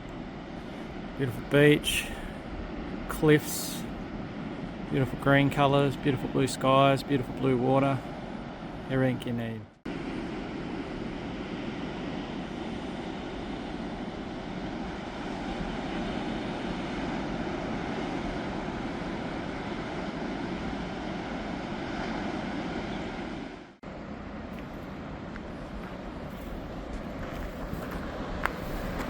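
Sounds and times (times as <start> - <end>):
wind rushing over microphone: 9.9 - 29.0.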